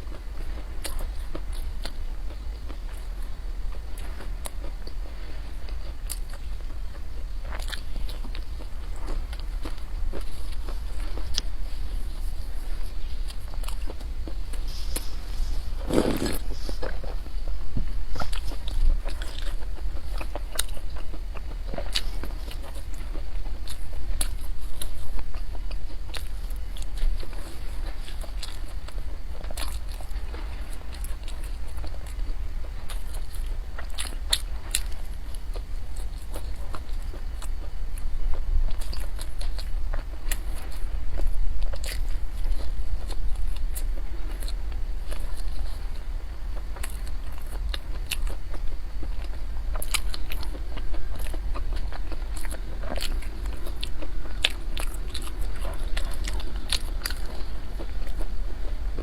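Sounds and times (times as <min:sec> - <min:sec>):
chewing nut-filled bread: 0:00.0 - 0:59.0
steady low hum: 0:00.0 - 0:59.0
crisp crunches of walnuts: 0:13.0 - 0:17.2.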